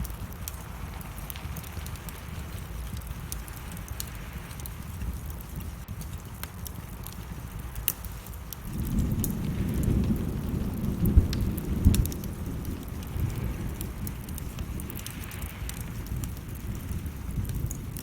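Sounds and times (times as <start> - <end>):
steady rain: 0.0 - 18.0
wood fire crackling: 0.0 - 18.0
thunder rumbling: 8.4 - 18.0.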